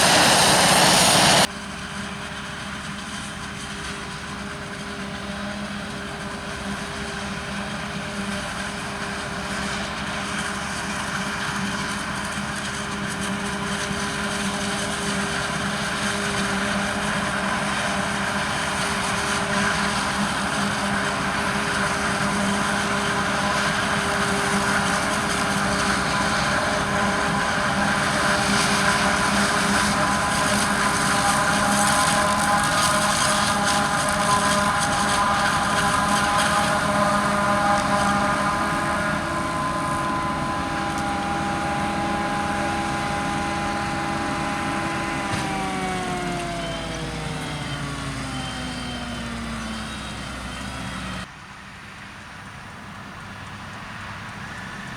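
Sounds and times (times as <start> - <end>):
farm machinery droning: 0.0 - 51.3
high machine whine: 22.4 - 51.3.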